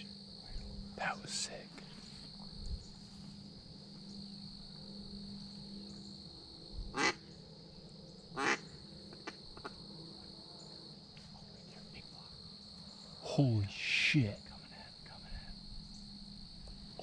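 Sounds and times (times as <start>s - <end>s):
crickets droning: 0.0s - 17.0s
duck quacks: 7.0s - 7.2s, 8.4s - 8.6s.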